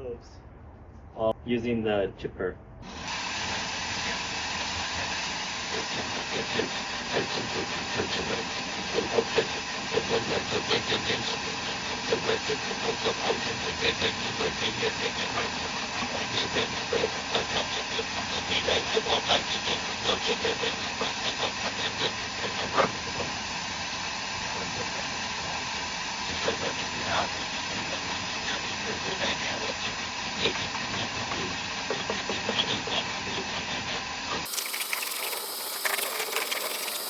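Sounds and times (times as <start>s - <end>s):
wood chipper whirring: 2.9s - 30.1s.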